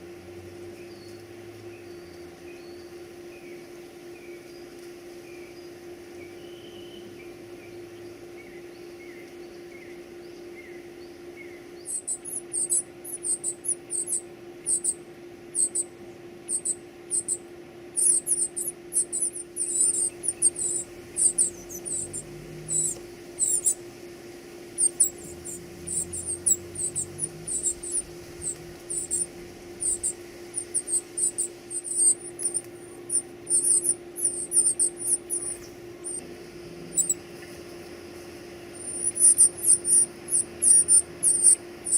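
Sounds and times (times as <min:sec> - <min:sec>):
steady low hum: 0:00.0 - 0:41.9
baby birds cheeping: 0:10.6 - 0:23.8, 0:24.7 - 0:41.9.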